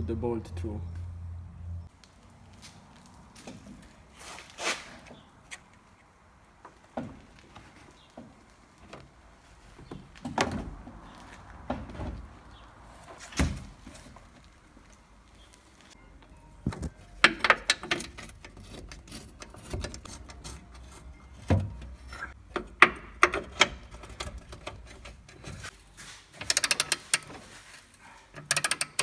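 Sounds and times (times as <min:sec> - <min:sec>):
metal clunks and knocks: 0:16.6 - 0:25.7.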